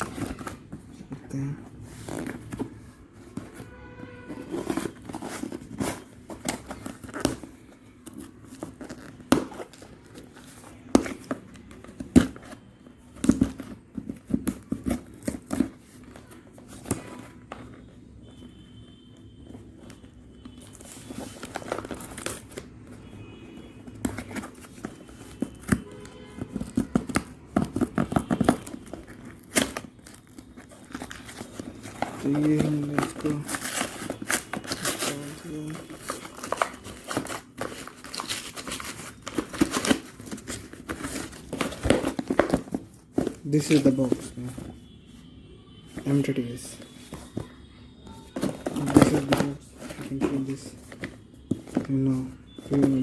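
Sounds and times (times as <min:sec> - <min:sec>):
plastic wrap scraping and tearing: 0:24.0 - 0:45.0.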